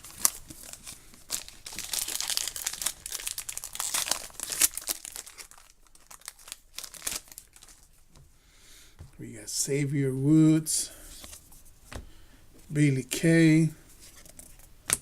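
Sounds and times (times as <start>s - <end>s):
wrapper crinkling and tearing: 0.0s - 8.0s.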